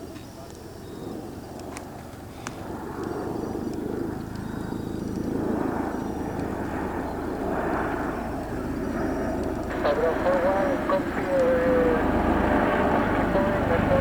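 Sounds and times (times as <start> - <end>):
aircraft rotor beat: 0.0 - 14.0
broad rushing engine noise: 4.0 - 14.0.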